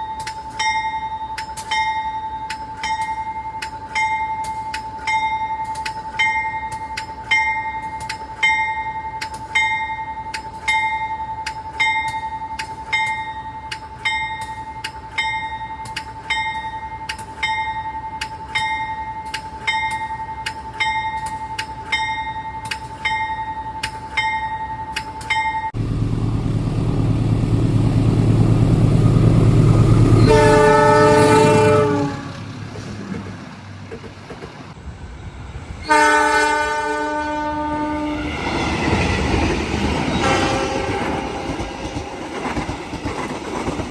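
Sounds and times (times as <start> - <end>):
locomotive bell ringing: 0.0 - 32.4, 38.2 - 43.0
train rumbling: 0.0 - 43.9
locomotive horn blast: 29.7 - 32.6, 35.8 - 38.5, 40.1 - 41.6.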